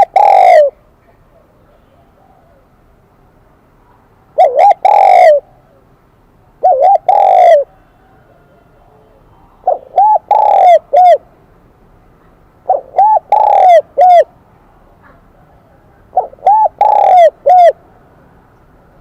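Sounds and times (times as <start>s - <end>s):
dove cooing: 0.0s - 0.8s, 1.4s - 2.7s, 4.4s - 5.8s, 6.6s - 11.3s, 12.6s - 17.8s.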